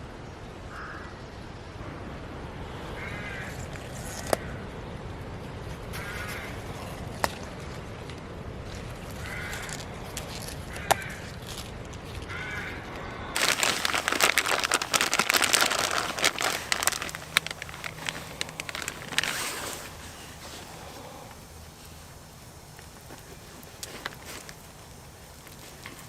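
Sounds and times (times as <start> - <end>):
harsh bird caws: 0.7 - 1.3, 2.9 - 4.7, 5.9 - 7.1, 9.1 - 19.3
footsteps through dry leaves: 5.8 - 26.0.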